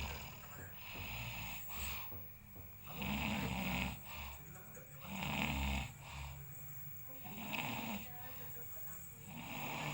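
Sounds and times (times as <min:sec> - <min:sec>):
man snoring: 0:00.0 - 0:02.1, 0:02.8 - 0:04.4, 0:05.0 - 0:06.4, 0:07.2 - 0:08.1, 0:09.3 - 0:09.9.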